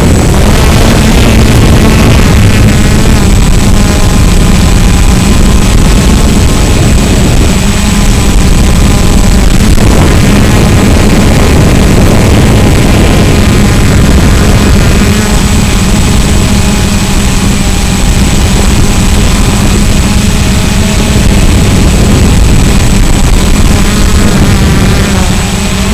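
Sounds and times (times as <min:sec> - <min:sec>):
drone propellers buzzing: 0:00.0 - 0:25.9.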